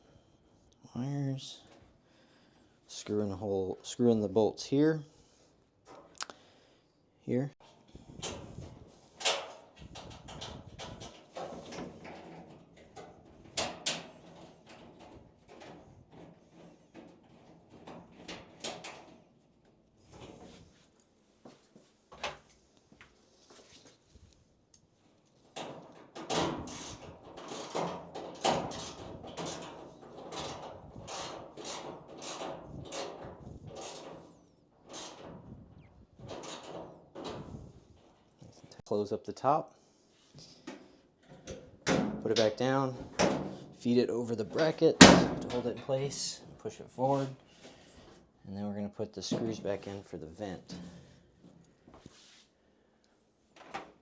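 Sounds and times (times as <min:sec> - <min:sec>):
metal parts clanking and rattling: 0:25.4 - 0:35.4, 0:44.6 - 0:46.1.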